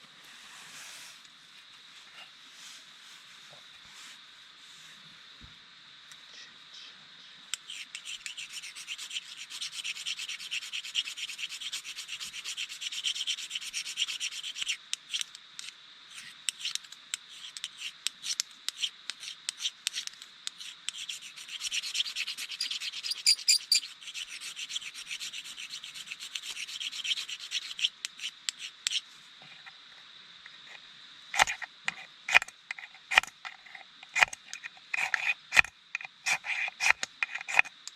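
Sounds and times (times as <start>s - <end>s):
rasping scraping strokes: 31.4s - 37.8s.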